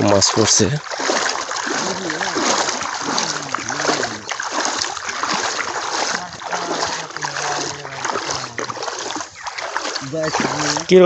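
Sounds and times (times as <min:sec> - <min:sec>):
men's voices: 0:00.0 - 0:00.8, 0:01.8 - 0:04.4, 0:06.1 - 0:08.7, 0:10.0 - 0:11.0
water splashing and sloshing: 0:00.0 - 0:11.0.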